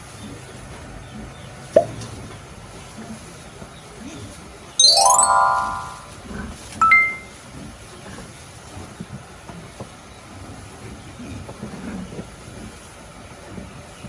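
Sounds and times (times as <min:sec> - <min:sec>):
bright ding: 0:04.8 - 0:06.1, 0:06.8 - 0:07.3
glockenspiel-like chime run: 0:04.8 - 0:06.2, 0:06.8 - 0:07.3.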